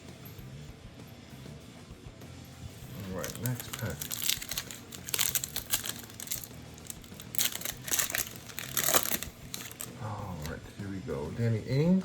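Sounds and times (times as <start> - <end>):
plastic wrapper crinkling and tearing: 3.0 - 10.5.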